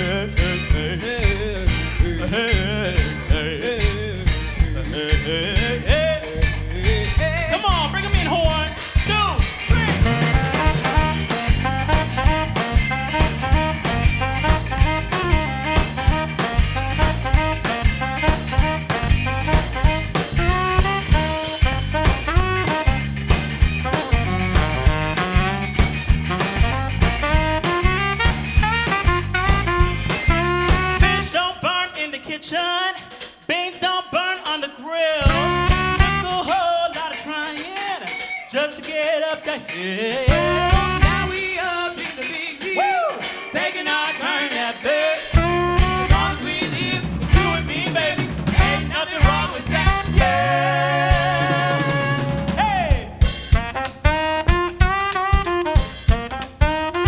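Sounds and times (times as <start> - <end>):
bass guitar: 0.0 - 31.6, 35.2 - 37.3, 40.0 - 44.2, 44.9 - 57.0
electric guitar: 0.0 - 32.3, 34.2 - 57.0
drum kit: 0.0 - 57.0
saxophone: 9.6 - 31.6, 35.2 - 37.0, 40.3 - 43.4, 44.9 - 57.0.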